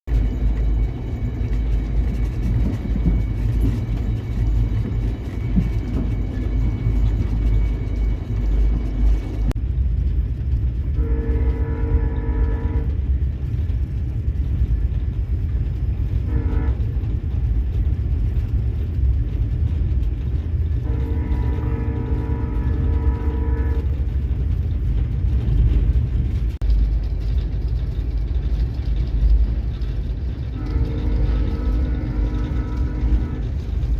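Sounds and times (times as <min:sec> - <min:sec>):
low train rumble: 0:00.0 - 0:33.9
locomotive horn blasts: 0:10.9 - 0:13.0, 0:16.2 - 0:16.8, 0:20.8 - 0:24.0, 0:30.5 - 0:33.6.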